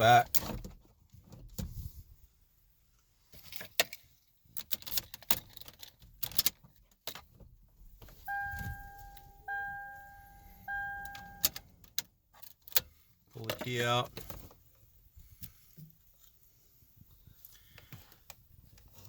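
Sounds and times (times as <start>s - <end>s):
vehicle electronic warning chime: 8.2s - 11.6s.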